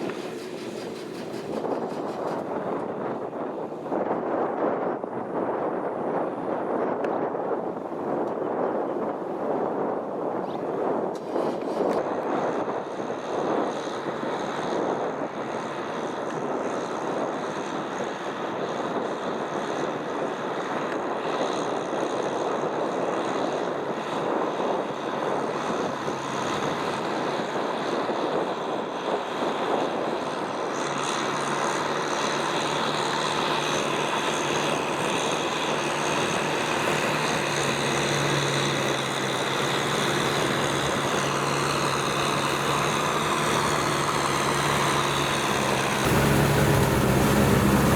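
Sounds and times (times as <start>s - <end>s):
tractor diesel engine running: 0.0s - 2.5s, 31.0s - 47.9s
low engine hum: 24.8s - 47.9s.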